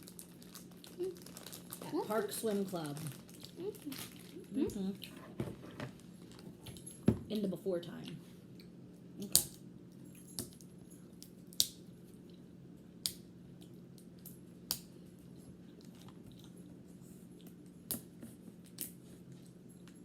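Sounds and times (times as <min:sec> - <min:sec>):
chewing gummy candy: 0:00.0 - 0:05.2, 0:15.3 - 0:17.6
steady low hum: 0:00.0 - 0:20.0.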